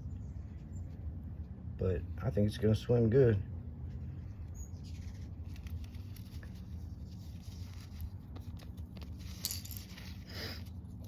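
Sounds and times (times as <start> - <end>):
low background hum: 0.0 - 11.0
faint clicks and rustles: 3.8 - 11.0.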